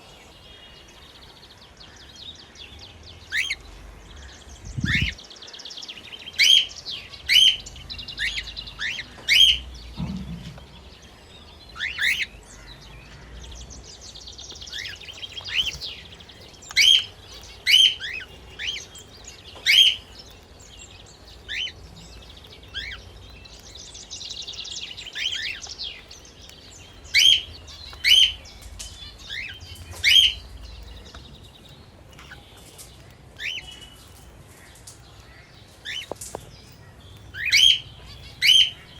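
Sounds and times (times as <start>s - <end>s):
sharp bird chirps: 3.3s - 5.6s, 11.6s - 32.8s.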